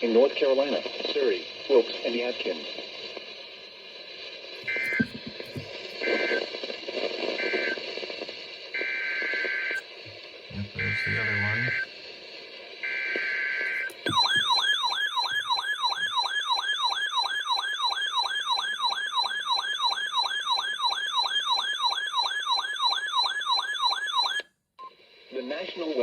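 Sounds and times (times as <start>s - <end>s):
siren-like electronic alert tone: 4.7s - 5.2s, 10.8s - 11.8s, 14.1s - 24.4s.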